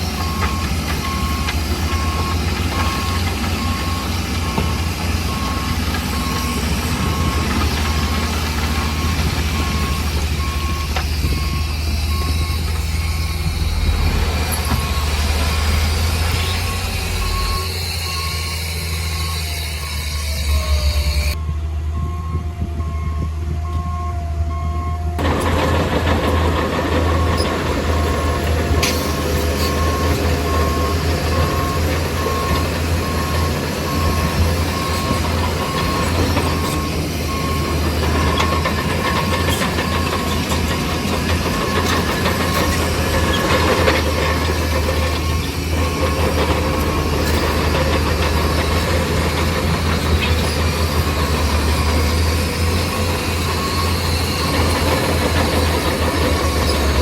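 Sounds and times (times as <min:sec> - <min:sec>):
bulldozer diesel engine running: 0:00.0 - 0:57.0
high beeping: 0:09.0 - 0:25.0.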